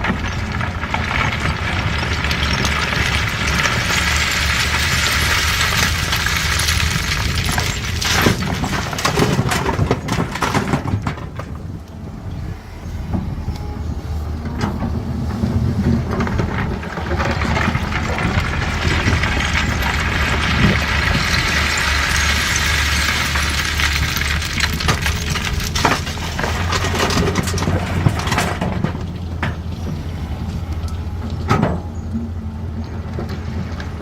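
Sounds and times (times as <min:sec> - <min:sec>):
stone scraping and clattering: 0:00.0 - 0:11.6, 0:15.4 - 0:29.7
excavator diesel engine running: 0:00.0 - 0:34.0.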